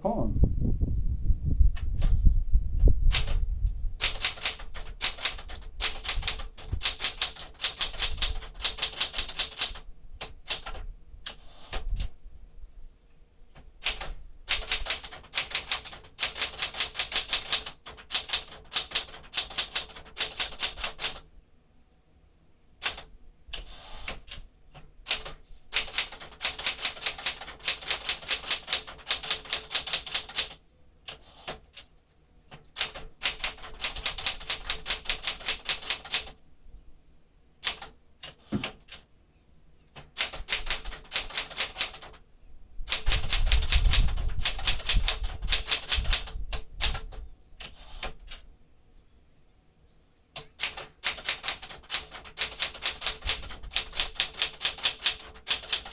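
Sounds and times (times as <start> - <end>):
manual typewriter keys clacking: 3.1 - 3.4, 4.0 - 12.1, 13.6 - 21.3, 22.8 - 31.9, 32.5 - 36.4, 37.6 - 39.1, 39.9 - 42.2, 42.9 - 48.4, 50.4 - 55.9.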